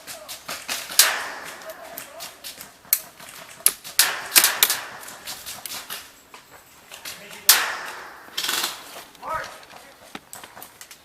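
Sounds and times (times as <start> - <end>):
airsoft gun shots: 0.8 - 2.0, 4.0 - 5.4, 7.5 - 8.9.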